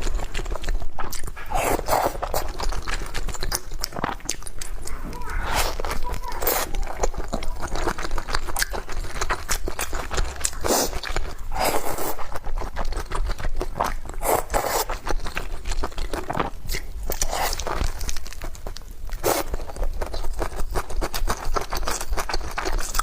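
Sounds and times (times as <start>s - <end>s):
chewing and crunchy bites: 0.0s - 23.0s
scrapes: 4.7s - 7.0s.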